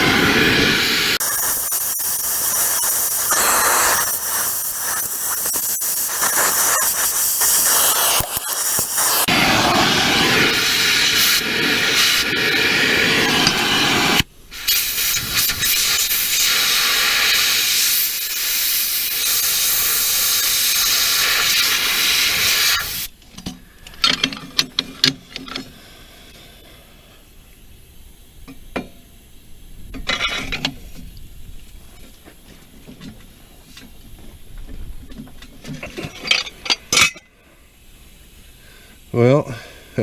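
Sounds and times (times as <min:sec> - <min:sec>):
gas torch hissing: 0:00.0 - 0:23.2.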